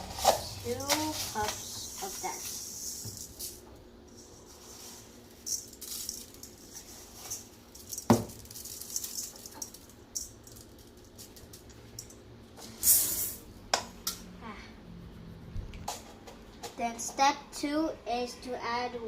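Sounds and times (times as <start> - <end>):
dry rice grains rattling: 0.0 - 12.1.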